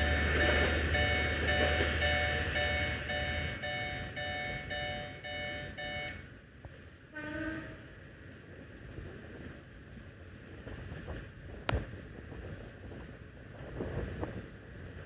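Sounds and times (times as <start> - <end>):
wind rumble on microphone: 7.8 - 15.0.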